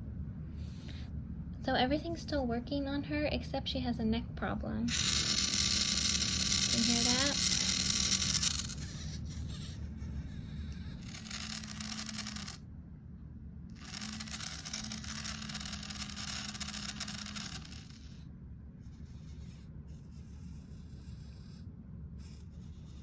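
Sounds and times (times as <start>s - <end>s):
robot gear motor whirring and grinding: 4.9s - 9.0s, 11.0s - 12.6s, 13.8s - 18.0s.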